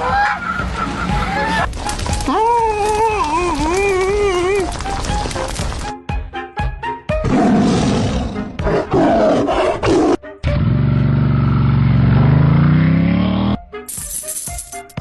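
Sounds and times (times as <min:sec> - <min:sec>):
loud animal roar: 0:07.2 - 0:10.2
music with a rattle: 0:13.9 - 0:15.0.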